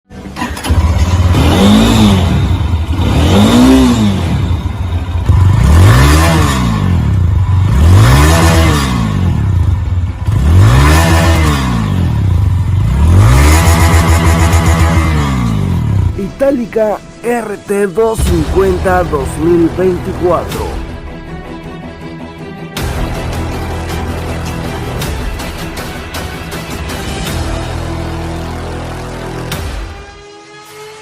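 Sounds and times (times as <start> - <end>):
motorcycle engine revving: 0.1 - 16.4.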